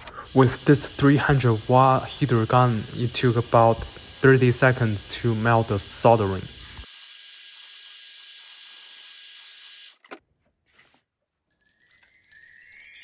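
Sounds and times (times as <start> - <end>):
heat gun hissing: 0.0 - 10.0.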